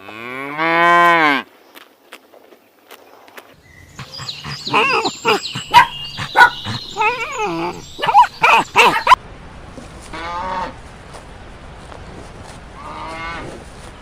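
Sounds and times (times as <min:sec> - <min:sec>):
animal cries: 0:03.8 - 0:09.2.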